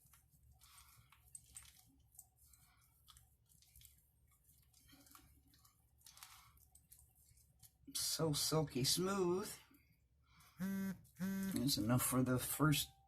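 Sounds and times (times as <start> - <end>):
shaving brush lathering soap: 0.0 - 9.8.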